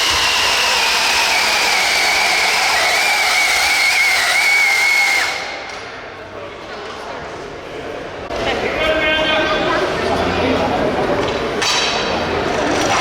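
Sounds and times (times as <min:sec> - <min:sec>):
electric motor whining: 0:00.0 - 0:04.2.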